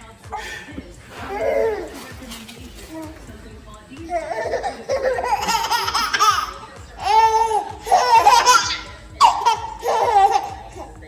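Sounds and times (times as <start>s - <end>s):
baby laughing: 0.3s - 3.3s, 4.0s - 11.0s
baby squealing: 1.1s - 2.0s, 4.1s - 11.0s.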